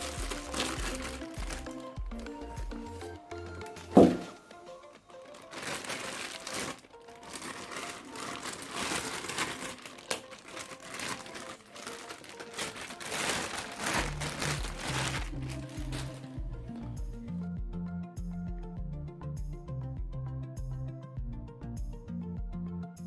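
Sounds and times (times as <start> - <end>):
packaging crinkling and rustling: 0.0 - 17.0
background music: 0.0 - 23.0.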